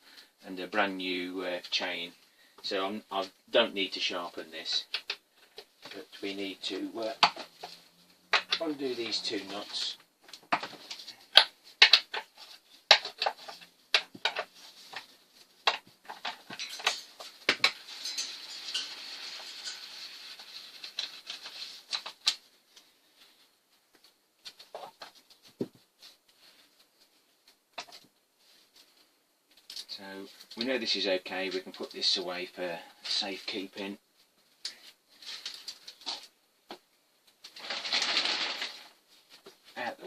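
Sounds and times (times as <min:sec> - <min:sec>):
metal clicks and clatter: 0:15.7 - 0:20.0
metal scraping: 0:16.3 - 0:21.9.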